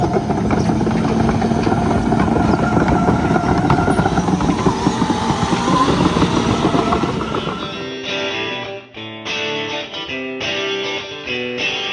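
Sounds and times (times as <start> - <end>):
heavy machine engine rumbling: 0.0 - 8.3
thin wavering squeal: 1.7 - 8.3.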